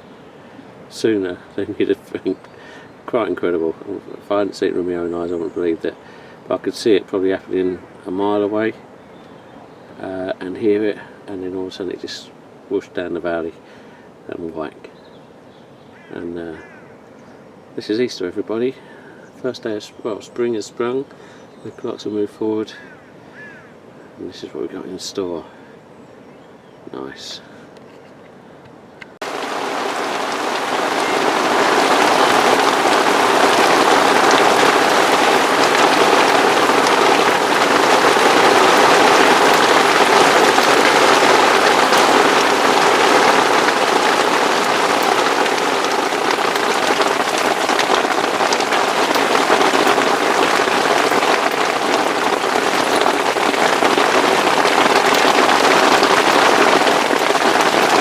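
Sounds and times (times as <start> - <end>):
hail and rain pelting a tent: 29.2 - 58.0.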